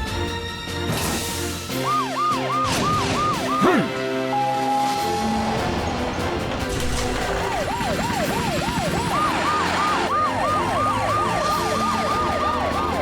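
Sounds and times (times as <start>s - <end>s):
cartoon wailing sirens: 1.7s - 5.5s, 7.3s - 13.0s.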